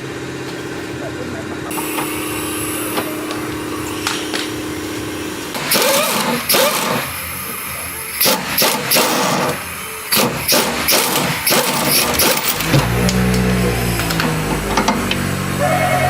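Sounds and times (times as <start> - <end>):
steady hum: 0.0 - 10.4
impact wrench rattling: 5.5 - 7.2, 8.2 - 13.0.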